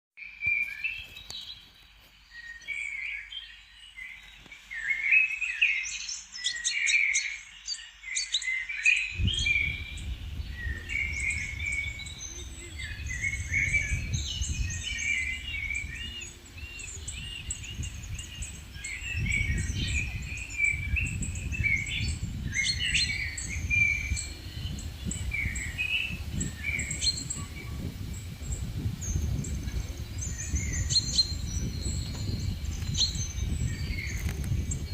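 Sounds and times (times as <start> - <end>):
songbirds chirping: 0.2 - 34.9
wind rumble on microphone: 9.1 - 34.9.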